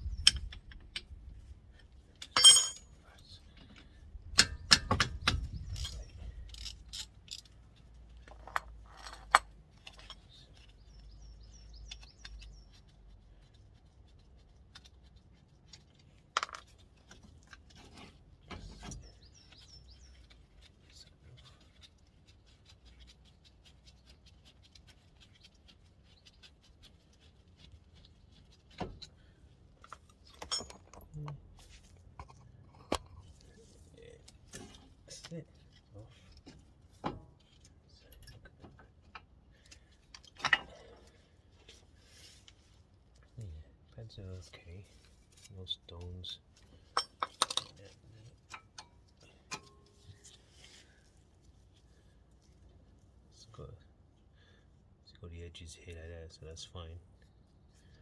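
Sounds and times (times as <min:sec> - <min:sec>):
spanner clinking on metal bolts: 0:00.1 - 0:01.2, 0:02.2 - 0:03.0, 0:04.3 - 0:07.6, 0:29.9 - 0:31.2, 0:40.2 - 0:41.0, 0:47.0 - 0:47.9.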